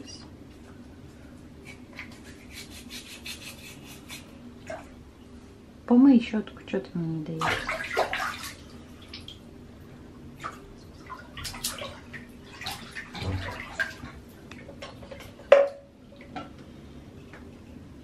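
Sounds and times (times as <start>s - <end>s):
water splashing and dripping: 7.4s - 9.4s, 10.4s - 14.7s.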